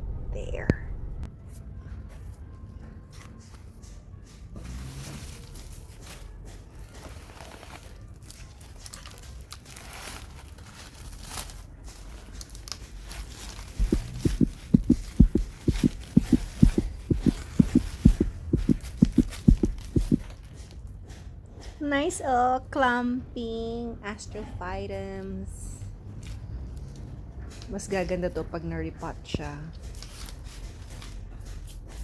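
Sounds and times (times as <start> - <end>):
rustling of plant wrapping: 4.7 - 14.7
heartbeat thumps: 13.8 - 20.3.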